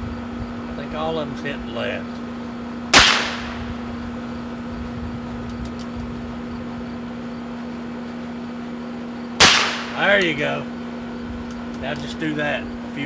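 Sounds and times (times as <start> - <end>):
steady background hum: 0.0 - 13.0
revolver shot echo: 2.9 - 3.9, 9.4 - 10.1.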